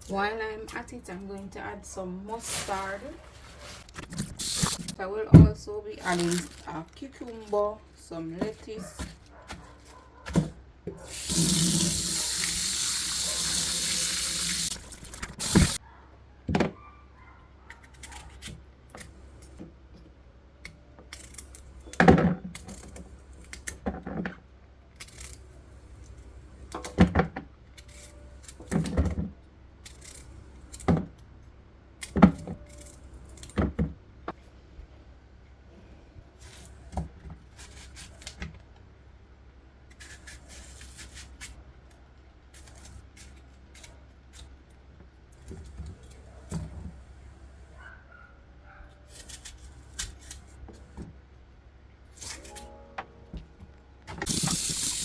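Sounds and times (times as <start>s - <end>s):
tap running into a sink: 54.3s - 55.0s.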